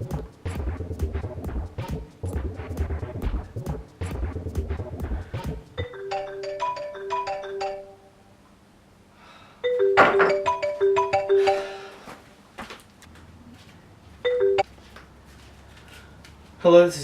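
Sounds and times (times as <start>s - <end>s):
marimba phone ringtone: 5.8s - 8.1s, 9.6s - 12.0s, 14.2s - 14.7s.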